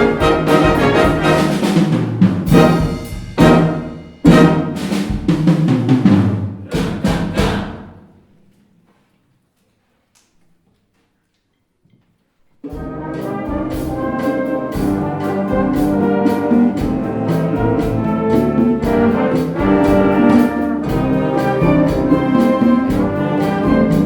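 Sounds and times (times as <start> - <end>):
brass holding chords: 0.0 - 4.8, 12.8 - 24.0
percussion strokes: 0.0 - 6.0, 12.7 - 24.0.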